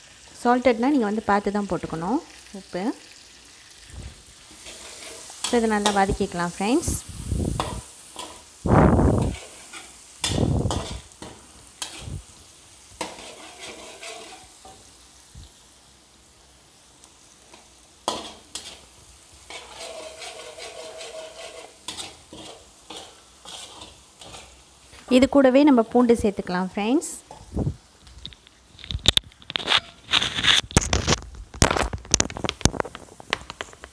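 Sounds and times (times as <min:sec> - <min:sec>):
onions sizzling in a pan: 0:00.0 - 0:33.9
spoon scraping and clicking on pan: 0:13.0 - 0:14.8, 0:17.5 - 0:18.9, 0:19.5 - 0:25.1, 0:28.2 - 0:30.8.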